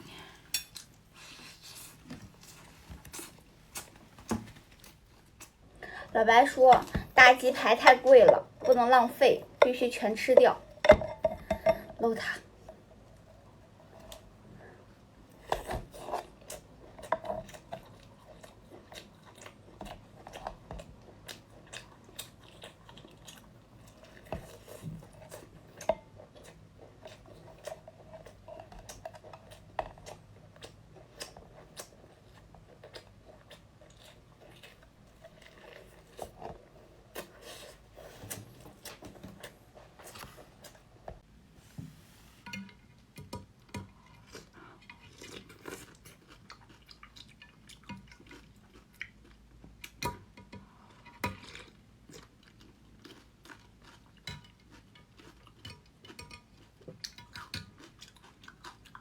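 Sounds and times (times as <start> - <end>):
person chewing fried chicken: 13.8 - 40.9, 43.6 - 59.0.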